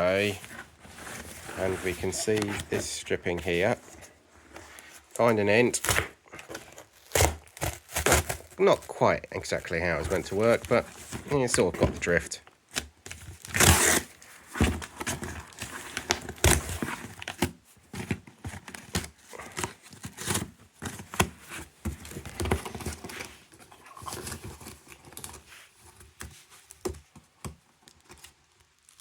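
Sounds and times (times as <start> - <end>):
cardboard box ripping open: 5.6 - 8.8, 12.8 - 17.5
cardboard rustling and knocks: 10.0 - 12.3, 14.5 - 18.9.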